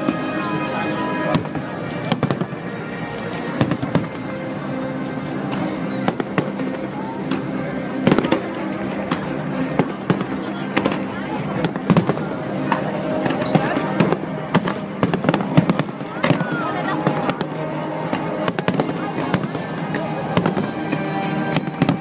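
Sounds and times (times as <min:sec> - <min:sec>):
fireworks bangs: 0:00.0 - 0:04.6, 0:05.3 - 0:22.0
music playing: 0:00.0 - 0:22.0.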